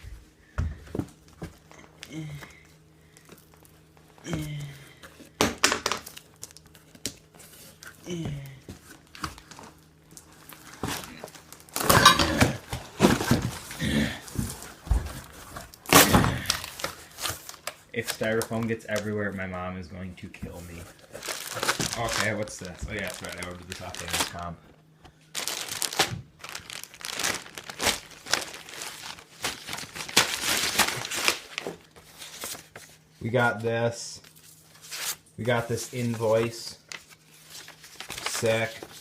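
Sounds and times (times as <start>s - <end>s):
packing material crinkling: 8.9s - 19.4s, 20.5s - 33.0s, 34.3s - 39.0s
packing material tearing: 9.1s - 14.1s, 15.7s - 19.0s, 21.0s - 24.6s, 25.3s - 32.8s, 36.0s - 39.0s.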